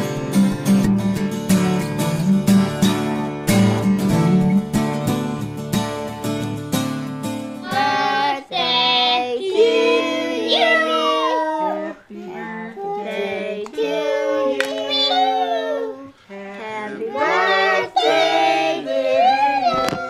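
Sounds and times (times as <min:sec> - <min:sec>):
child singing: 0:07.6 - 0:20.0.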